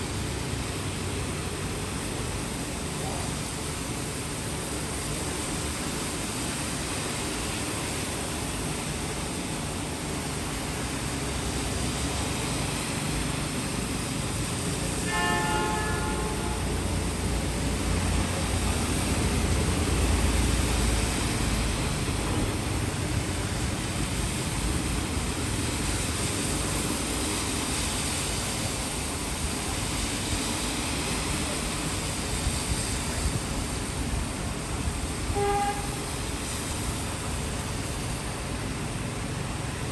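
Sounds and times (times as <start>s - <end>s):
passing traffic rumble: 0.0s - 39.9s
rain hissing: 0.0s - 39.9s
short horn toot: 15.1s - 16.7s, 35.4s - 36.1s.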